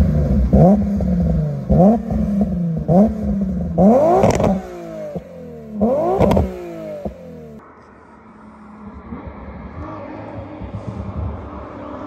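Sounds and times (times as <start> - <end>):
car exhaust revving: 0.0 - 7.6.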